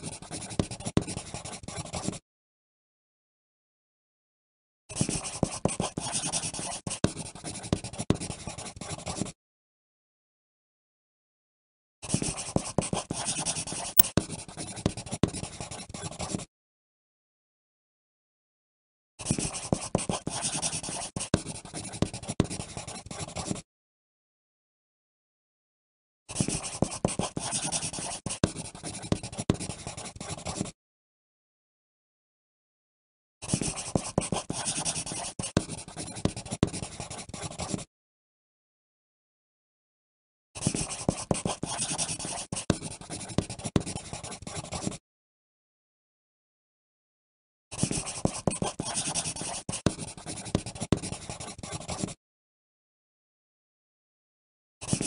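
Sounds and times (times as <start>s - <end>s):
pencil scratching on paper: 0.0s - 2.2s, 5.0s - 9.4s, 12.1s - 16.5s, 19.2s - 23.6s, 26.4s - 30.8s, 33.5s - 37.9s, 40.6s - 45.0s, 47.8s - 52.2s.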